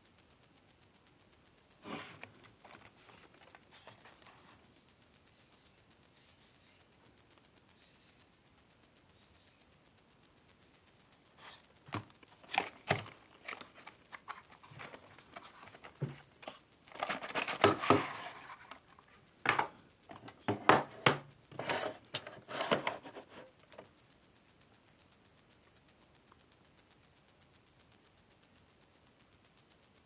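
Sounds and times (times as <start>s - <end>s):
wrapping crinkling and tearing: 1.8s - 4.6s, 11.4s - 23.8s
clicks and knocks: 19.5s - 23.5s.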